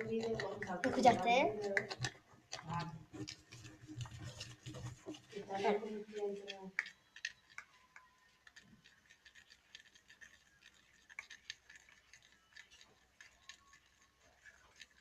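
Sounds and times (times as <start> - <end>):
slime being mixed: 0.0 - 15.0.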